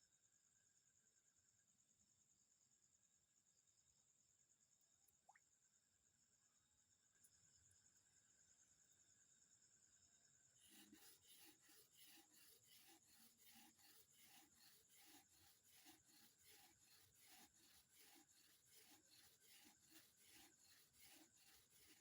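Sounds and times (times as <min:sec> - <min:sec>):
faint rhythmic scratching: 0:10.6 - 0:22.0.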